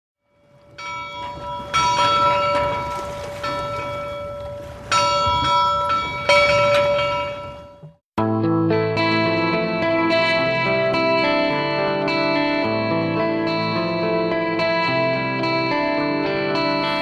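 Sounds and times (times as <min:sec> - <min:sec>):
church bell tolling: 0:00.3 - 0:08.0.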